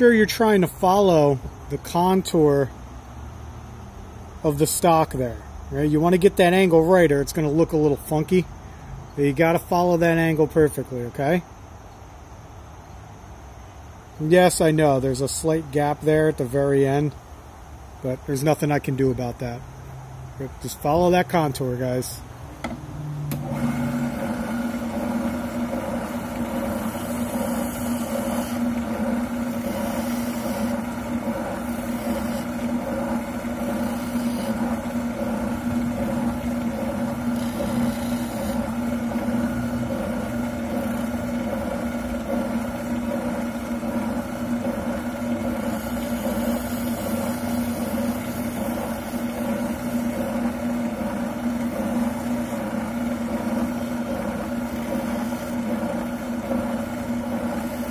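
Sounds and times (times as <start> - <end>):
sander motor humming: 22.5 - 57.9
sanding hiss: 25.8 - 41.1, 45.4 - 50.4.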